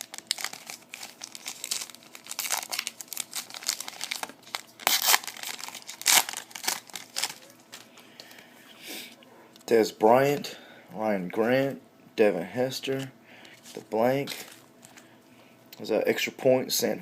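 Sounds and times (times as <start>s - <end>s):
plastic wrapper tearing: 0.0s - 7.9s
plastic wrapper crinkling: 0.0s - 8.0s.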